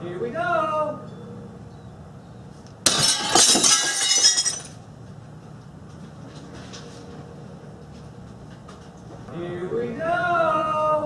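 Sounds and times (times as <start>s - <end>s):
glass pane shattering: 2.9s - 4.8s
tinkling glass shards: 2.9s - 4.8s.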